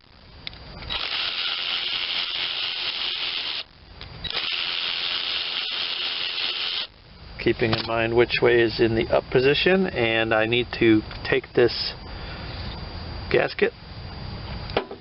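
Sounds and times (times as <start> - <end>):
power driver spinning: 0.4 - 6.9.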